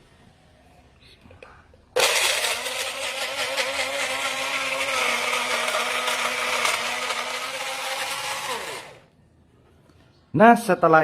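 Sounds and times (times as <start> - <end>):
electric blender running: 2.0 - 9.1
motor winding down: 2.0 - 9.1.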